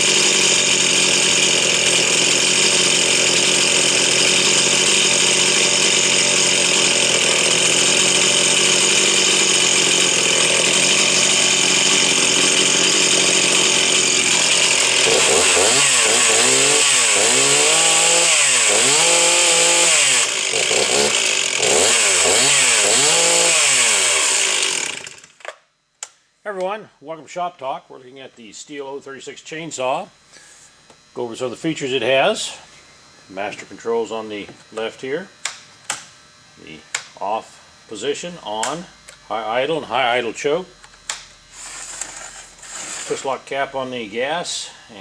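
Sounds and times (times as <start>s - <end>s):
chainsaw revving: 0.0s - 25.4s, 41.5s - 45.0s.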